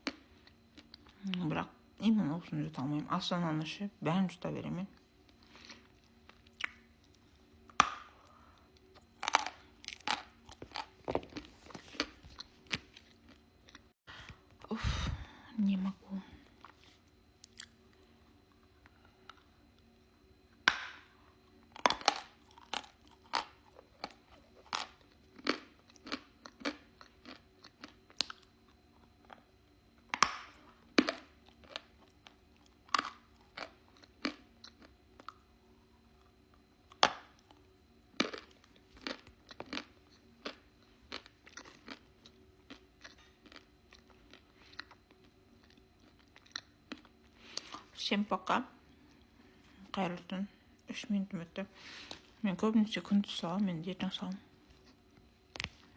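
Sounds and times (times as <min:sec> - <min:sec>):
chalk crunching while chewed: 0:05.3 - 0:13.9, 0:16.5 - 0:19.6, 0:21.6 - 0:47.8.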